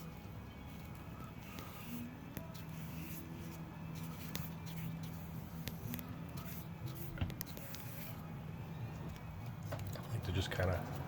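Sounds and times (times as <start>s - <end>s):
paintbrush stroking paint: 0.0s - 8.3s.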